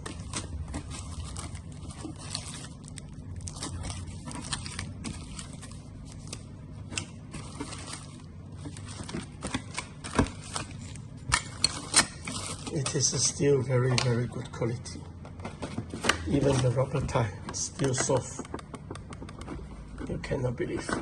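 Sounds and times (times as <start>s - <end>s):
small parts rustling: 0.0s - 13.2s
small clicks and taps: 17.5s - 20.1s.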